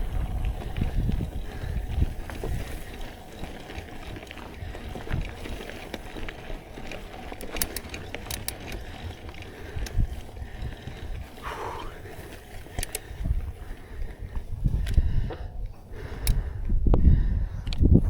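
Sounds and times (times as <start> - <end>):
bike clicks and rattles: 0.0 - 18.0
sharp ticks: 4.6 - 13.4.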